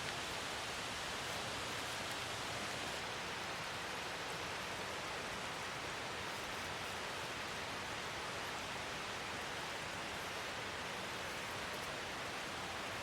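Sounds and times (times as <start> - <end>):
light rain falling: 0.0 - 13.0.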